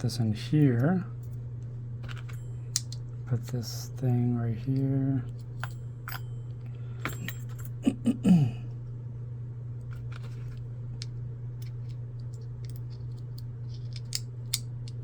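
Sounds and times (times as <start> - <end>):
steady low hum: 0.0 - 15.0
metal parts clicking and tapping: 2.0 - 3.0, 7.0 - 7.8, 9.9 - 15.0
falling vocal sound: 7.8 - 8.7.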